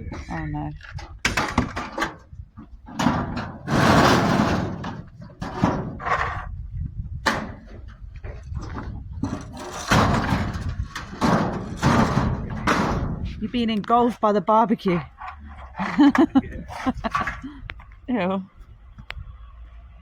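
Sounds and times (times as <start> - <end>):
sheet metal clanks and thuds: 0.1 - 6.5, 7.2 - 13.6
metal barbecue scraping: 0.3 - 6.6, 7.4 - 17.4.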